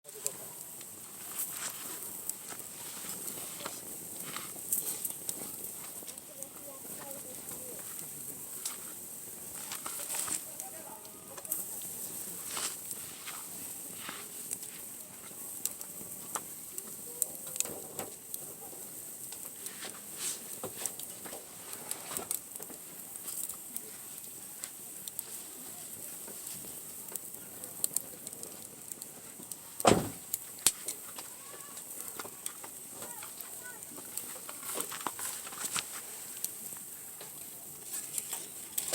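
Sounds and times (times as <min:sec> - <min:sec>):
wood fire crackling: 0:00.0 - 0:38.9
loud knock: 0:29.8 - 0:30.2.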